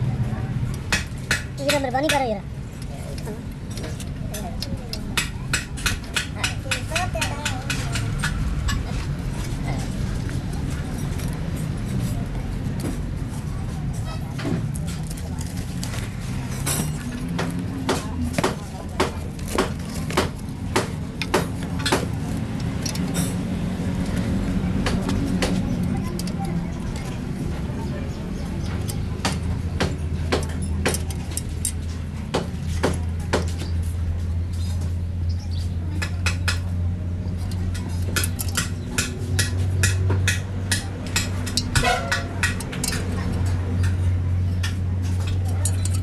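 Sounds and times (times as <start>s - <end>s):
sharp metallic taps: 37.5s - 44.0s.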